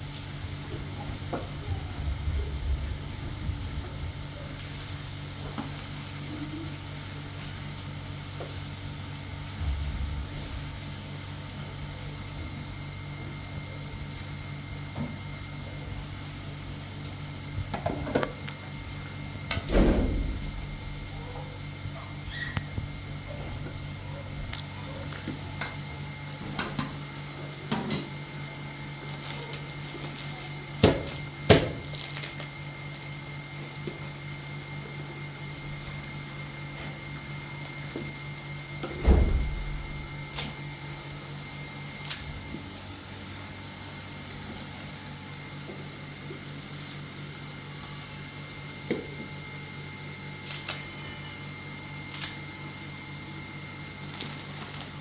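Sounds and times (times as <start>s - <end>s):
steady low hum: 0.0s - 29.4s, 38.0s - 44.7s
heavy thud: 9.4s - 11.8s, 19.6s - 21.6s, 38.9s - 40.3s.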